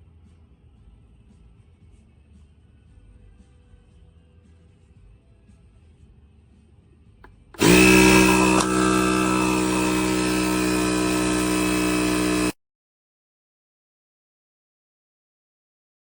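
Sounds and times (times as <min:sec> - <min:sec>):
air compressor motor hum: 0:07.6 - 0:12.6.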